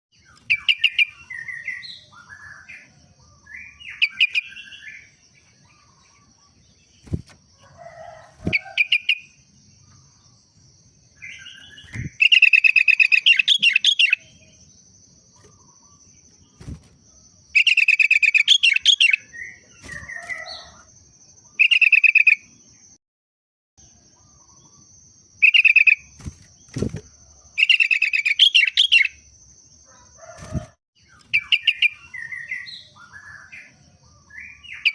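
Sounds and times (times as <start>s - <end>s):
bird singing rapid chattering phrases: 0.2s - 7.4s, 11.1s - 20.8s, 21.4s - 22.6s, 25.4s - 29.4s, 30.5s - 34.9s.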